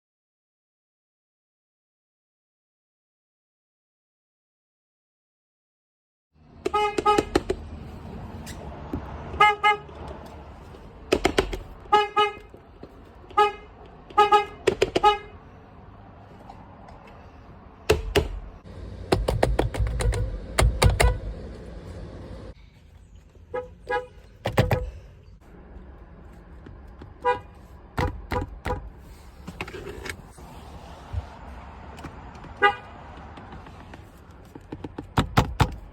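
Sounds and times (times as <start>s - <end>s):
car horn beeps: 6.6s - 7.5s, 9.3s - 10.0s, 11.8s - 12.6s, 13.3s - 15.4s, 19.9s - 21.4s, 23.5s - 24.9s, 27.2s - 28.9s, 32.5s - 33.0s
clicks and thumps: 8.8s - 11.9s, 12.8s - 15.2s, 19.1s - 21.2s.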